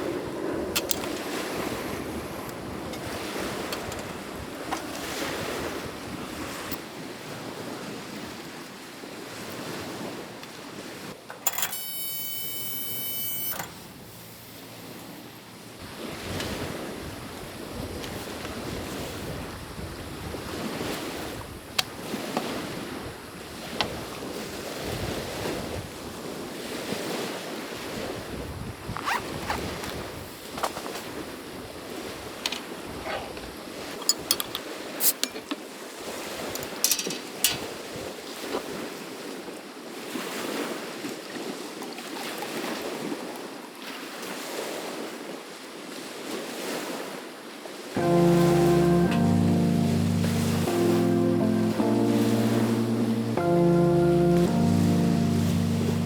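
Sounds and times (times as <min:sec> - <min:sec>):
strong wind gusting: 0:00.0 - 0:06.8
waves washing in: 0:00.0 - 0:08.4, 0:48.0 - 0:56.0
brief high tone: 0:11.4 - 0:14.8, 0:48.0 - 0:56.0.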